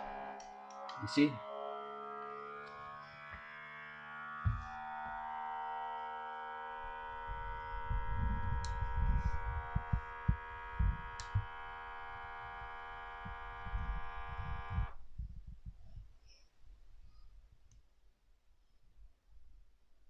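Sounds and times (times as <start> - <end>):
vacuum sealer pump humming: 0.0 - 15.0
low thumps: 4.2 - 5.2, 7.2 - 16.1.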